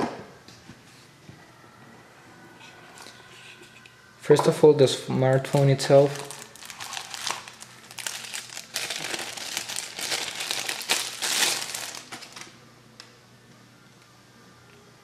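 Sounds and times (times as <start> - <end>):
plastic packaging crinkling: 5.3 - 12.6.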